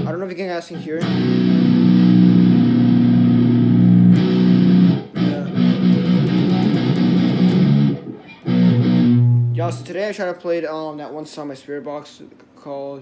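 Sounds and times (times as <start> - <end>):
electric guitar through amplifier: 0.0 - 0.2, 0.8 - 9.9.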